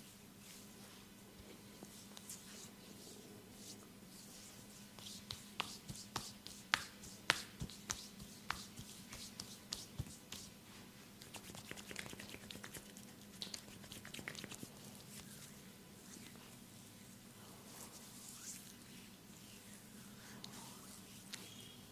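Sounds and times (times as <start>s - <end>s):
hands massaging clicks and slaps: 5.0s - 10.5s, 11.2s - 14.7s.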